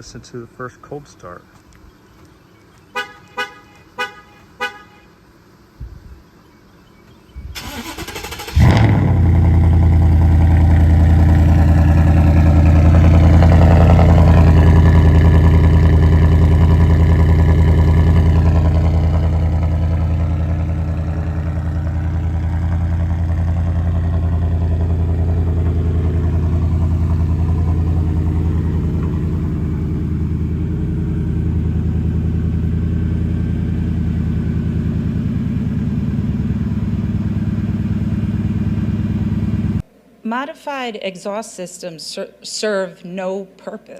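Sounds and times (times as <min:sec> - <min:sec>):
engine cranking: 0:07.6 - 0:09.3
engine idling: 0:07.6 - 0:39.8.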